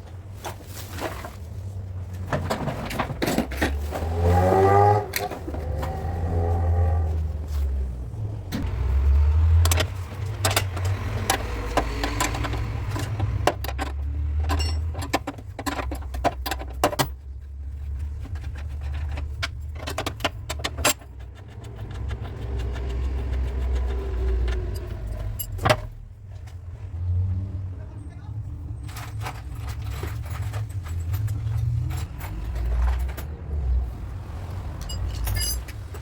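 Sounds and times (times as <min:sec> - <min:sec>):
metallic tool taps and clinks: 0:14.5 - 0:17.1, 0:34.8 - 0:35.8.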